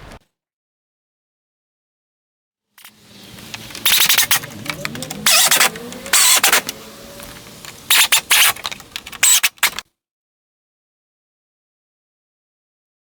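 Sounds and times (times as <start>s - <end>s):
cordless power tool bursts: 2.8s - 9.8s
motor hum: 2.8s - 9.8s.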